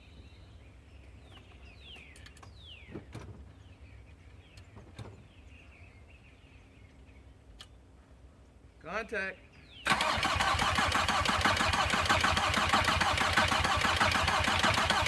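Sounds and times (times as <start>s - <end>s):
birds chirping: 9.0s - 10.2s.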